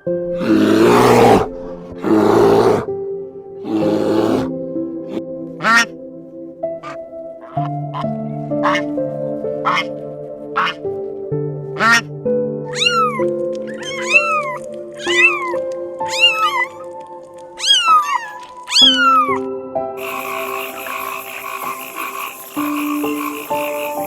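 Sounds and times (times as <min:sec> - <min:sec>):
background music: 0:00.0 - 0:24.0
cat meowing: 0:12.7 - 0:16.9, 0:17.5 - 0:19.5
dense buzzing chorus: 0:20.0 - 0:24.0.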